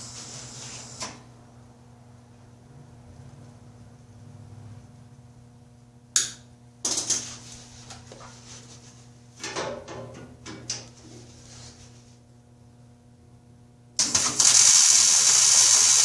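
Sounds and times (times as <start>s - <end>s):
low electrical hum: 0.0s - 15.9s
welding crackle: 14.0s - 16.0s.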